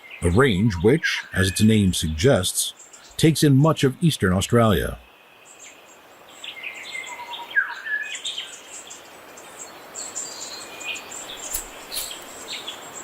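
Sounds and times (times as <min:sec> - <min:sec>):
birds chirping and whistling: 0:06.4 - 0:08.9, 0:10.0 - 0:13.0.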